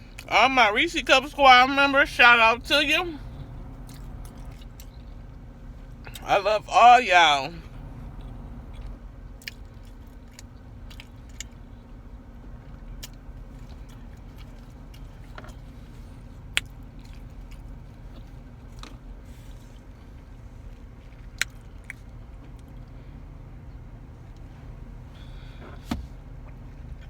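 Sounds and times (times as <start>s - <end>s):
steady low hum: 0.0s - 27.0s
person chewing food: 3.2s - 5.3s, 7.7s - 11.9s, 12.6s - 23.0s.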